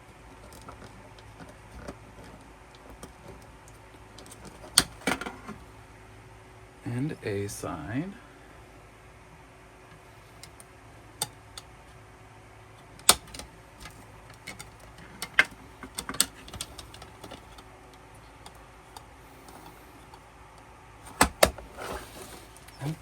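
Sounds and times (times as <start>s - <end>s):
packaging clicks and taps: 13.0s - 17.6s.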